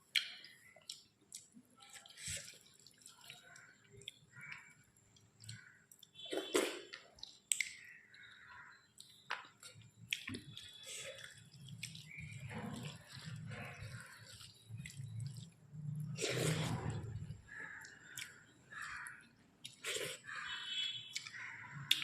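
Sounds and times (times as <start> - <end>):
wet mouth clicks and smacks: 0.1 - 3.2, 5.4 - 7.9, 21.1 - 22.0
person chewing: 0.1 - 4.2, 5.2 - 7.8, 9.0 - 22.0.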